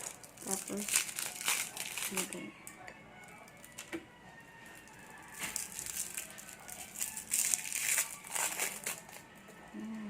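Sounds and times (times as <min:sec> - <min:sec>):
candy wrappers crinkling: 0:00.0 - 0:09.9.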